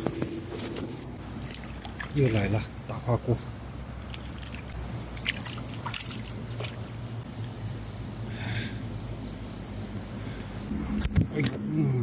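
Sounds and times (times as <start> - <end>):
stream water running: 1.2 - 8.0
small splashes: 1.4 - 2.6, 4.0 - 6.9.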